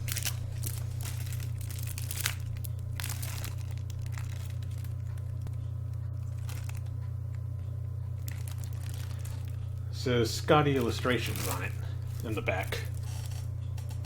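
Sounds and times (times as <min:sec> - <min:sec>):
paper book rustling: 0:00.0 - 0:05.5, 0:10.7 - 0:14.0
steady low hum: 0:00.0 - 0:14.0.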